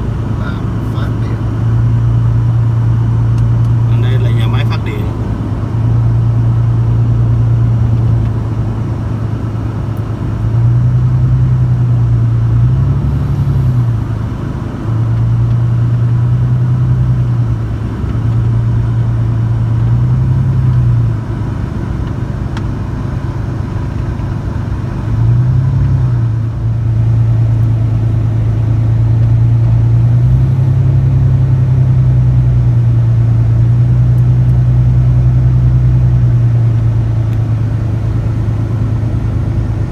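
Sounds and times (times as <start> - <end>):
low engine drone: 0.0 - 39.9.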